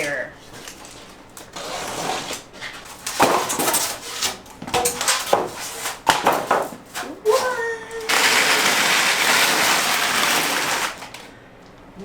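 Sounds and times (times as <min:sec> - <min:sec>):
hard objects knocking and clattering: 0:02.3 - 0:11.3.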